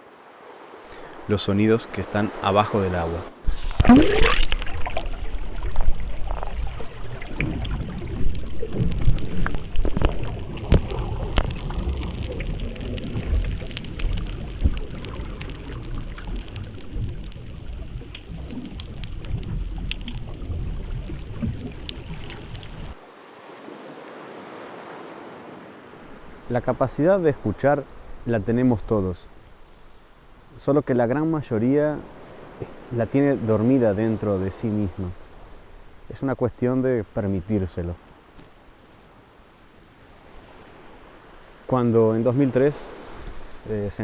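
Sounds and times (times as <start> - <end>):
steady hiss: 0.8 - 3.8, 26.1 - 44.0
low underwater rumble: 3.4 - 23.0
sharp clicks and crackles: 7.4 - 23.0.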